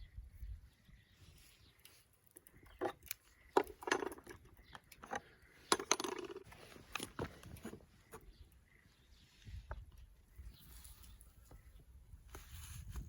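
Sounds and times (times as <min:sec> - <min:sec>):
metal camp gear clinking: 0:02.6 - 0:07.9.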